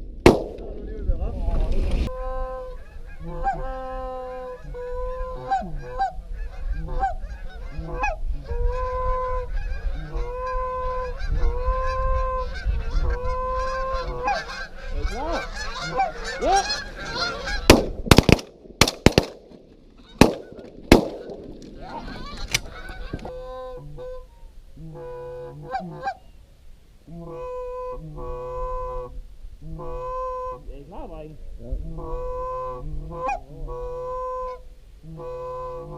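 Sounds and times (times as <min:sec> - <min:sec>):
shotgun blasts: 0:00.2 - 0:00.8, 0:17.7 - 0:19.6, 0:20.2 - 0:22.7
geese honking: 0:02.1 - 0:17.8, 0:19.9 - 0:26.3, 0:27.1 - 0:30.7, 0:31.9 - 0:35.9.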